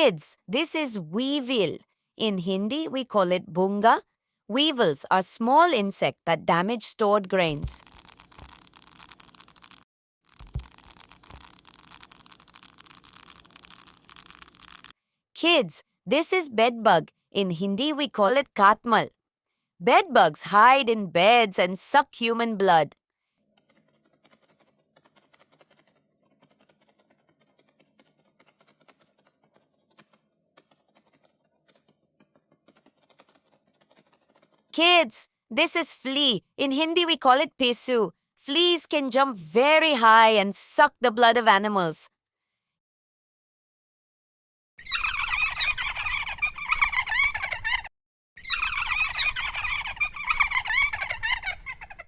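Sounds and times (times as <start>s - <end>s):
faint rapid clicking and crackling: 7.7s - 15.0s, 23.6s - 34.7s.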